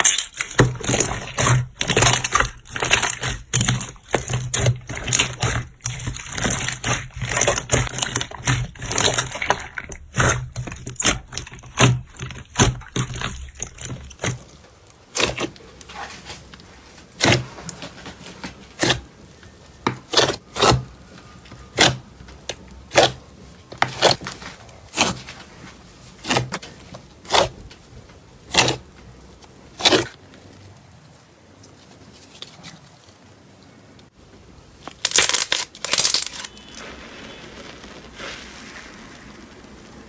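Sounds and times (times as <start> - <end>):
slime squeezed with sticky pops: 34.9 - 40.0.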